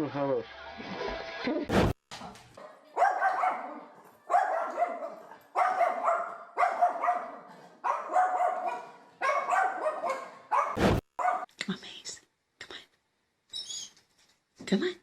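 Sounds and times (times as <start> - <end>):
dog barking: 2.6 - 11.5.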